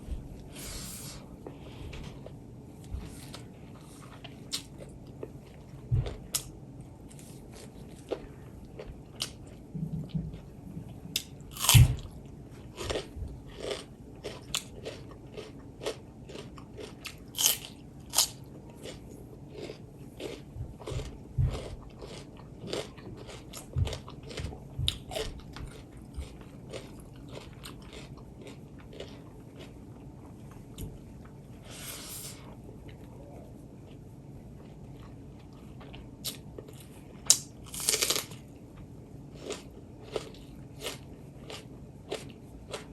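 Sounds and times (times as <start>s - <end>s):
person chewing and biting: 11.1s - 30.1s, 33.8s - 42.9s.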